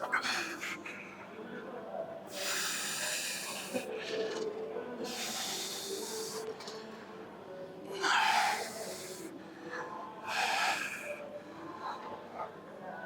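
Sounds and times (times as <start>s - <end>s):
forceful hissing breaths: 2.3s - 3.9s, 5.0s - 6.5s, 8.0s - 9.3s, 10.2s - 11.2s.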